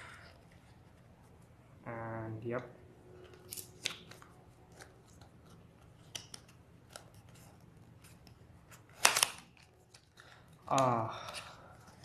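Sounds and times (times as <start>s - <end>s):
packaging clicks and snips: 3.3s - 7.3s, 8.1s - 12.0s.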